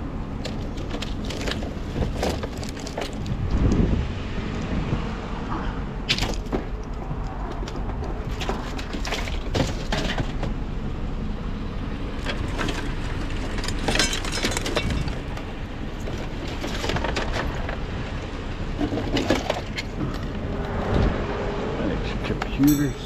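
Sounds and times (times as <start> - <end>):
steady low rumble: 0.0 - 9.8, 10.5 - 23.0
objects clattering into bins: 8.3 - 10.5, 12.2 - 17.8, 18.8 - 20.3.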